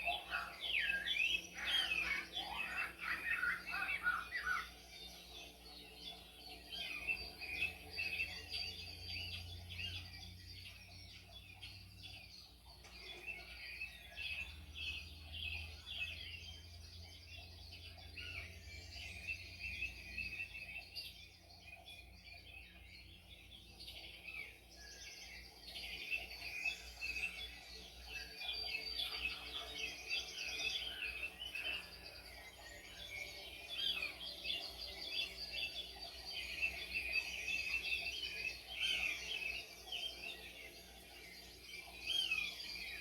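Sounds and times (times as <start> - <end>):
small birds chirping: 0.0 - 43.0.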